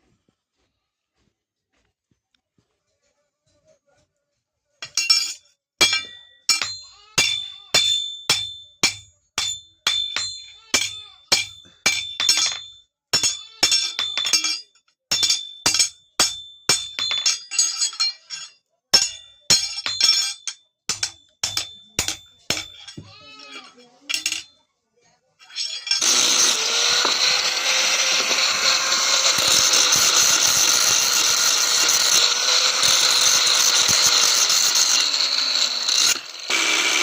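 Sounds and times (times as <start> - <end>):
hammer striking metal on anvil: 4.8 - 23.1, 24.1 - 24.5.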